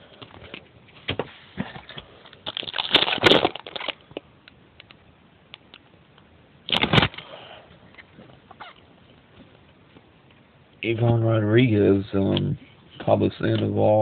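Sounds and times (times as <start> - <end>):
plastic wrapper crinkling and tearing: 2.4 - 4.2, 6.7 - 7.2.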